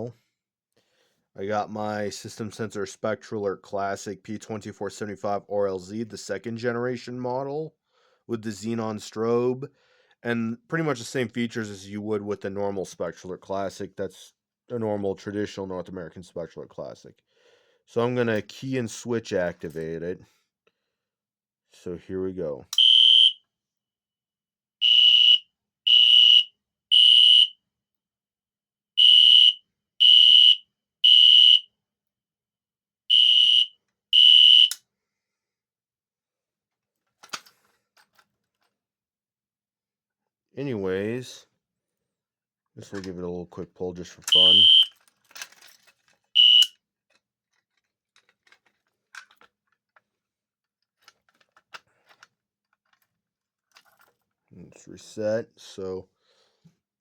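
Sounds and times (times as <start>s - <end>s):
loud high-pitched alarm horn blasts: 22.8s - 23.4s, 24.8s - 27.5s, 29.0s - 31.6s, 33.1s - 34.8s, 44.3s - 44.9s, 46.4s - 46.7s
alarm switch click: 44.3s - 44.9s, 46.4s - 46.7s.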